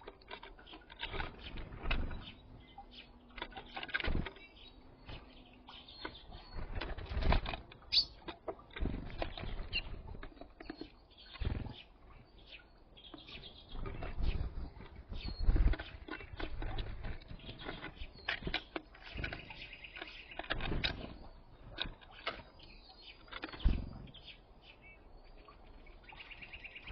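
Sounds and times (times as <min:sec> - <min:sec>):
birds knocking and pecking: 0:00.0 - 0:26.9
bird chirps: 0:00.5 - 0:07.2, 0:07.8 - 0:08.3, 0:09.1 - 0:26.9
bird wings flapping: 0:11.4 - 0:11.9, 0:23.4 - 0:24.2.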